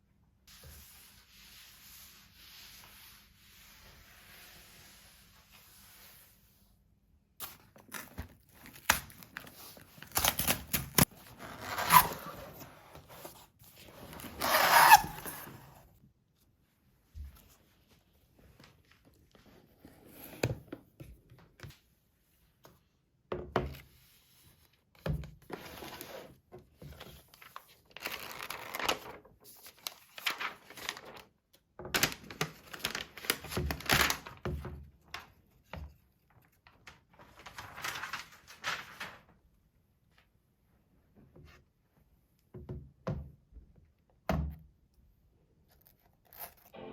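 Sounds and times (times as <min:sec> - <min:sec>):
rustling crinkling: 0:27.3 - 0:31.3, 0:36.3 - 0:39.4.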